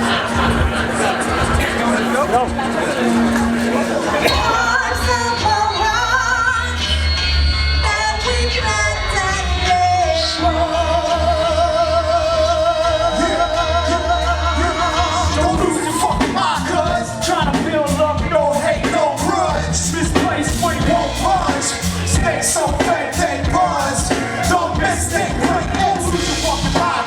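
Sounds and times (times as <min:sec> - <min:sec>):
person singing: 0:09.4 - 0:27.0
music with heavy bass beat: 0:14.2 - 0:27.0.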